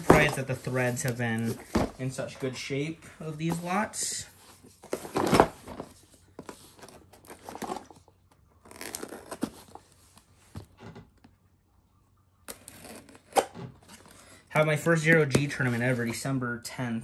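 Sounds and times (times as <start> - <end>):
packaging ripping: 8.6 - 9.6.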